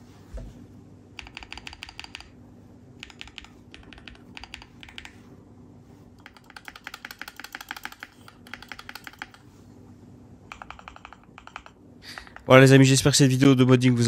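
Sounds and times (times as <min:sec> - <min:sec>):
mechanical keyboard typing: 0:01.2 - 0:02.4, 0:03.0 - 0:05.2, 0:06.2 - 0:09.4, 0:10.5 - 0:12.7.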